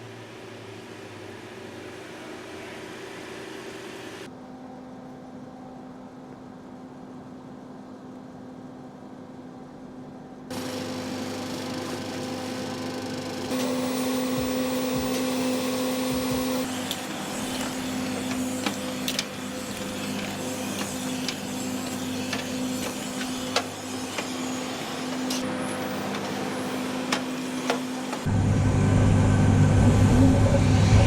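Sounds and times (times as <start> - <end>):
machine hum: 10.4 - 31.0.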